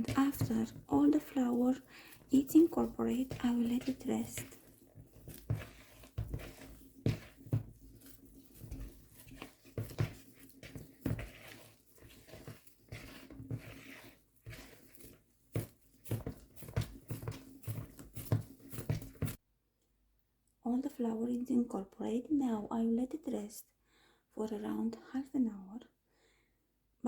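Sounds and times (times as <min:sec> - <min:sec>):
hands squishing bread dough: 0:00.0 - 0:19.4.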